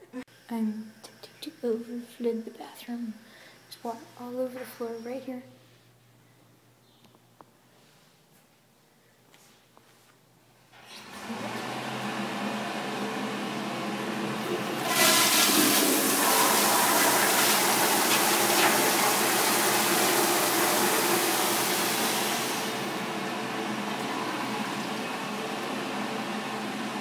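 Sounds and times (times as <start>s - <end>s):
toilet flushing: 10.8s - 27.0s.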